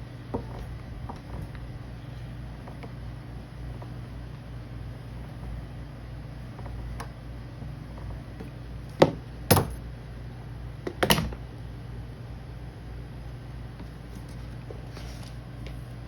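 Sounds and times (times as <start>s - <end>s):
low steady hum: 0.0s - 16.0s.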